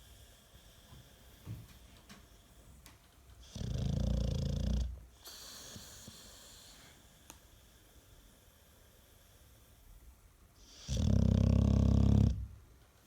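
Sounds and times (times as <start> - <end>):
soft hissing breath: 0.0 - 3.0, 5.1 - 10.8
dog snoring: 3.4 - 6.8, 10.6 - 12.6.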